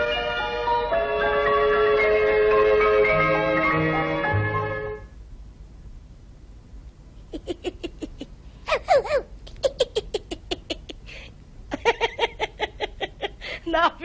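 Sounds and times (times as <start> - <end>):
person laughing: 7.3 - 13.8.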